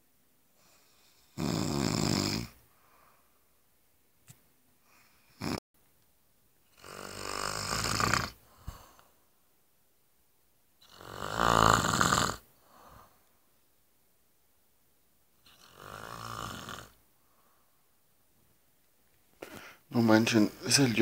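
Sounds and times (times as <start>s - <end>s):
man snoring loudly: 0.7s - 2.6s, 5.3s - 5.6s, 6.8s - 8.4s, 10.8s - 12.4s, 15.5s - 17.0s.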